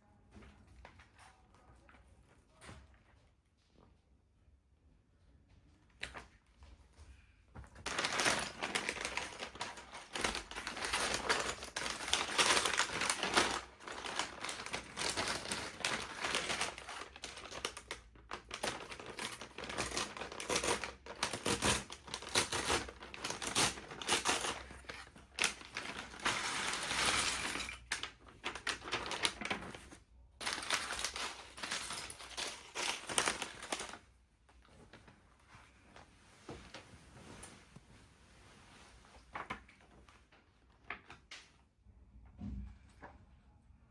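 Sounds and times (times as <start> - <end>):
plastic and cardboard crinkling: 7.5 - 38.0
plastic pieces clicking and clattering: 7.9 - 29.7, 30.4 - 33.9.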